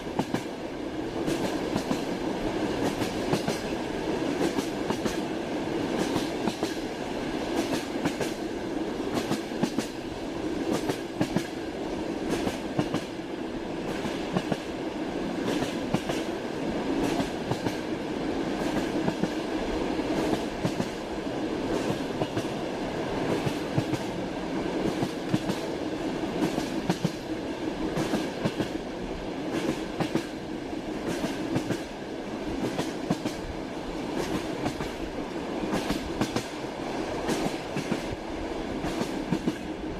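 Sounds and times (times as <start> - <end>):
train wheels clattering: 2.8 - 3.7, 5.9 - 6.8, 10.7 - 11.6, 12.3 - 13.2, 15.4 - 16.3, 17.0 - 17.8, 31.0 - 31.9, 38.8 - 39.6.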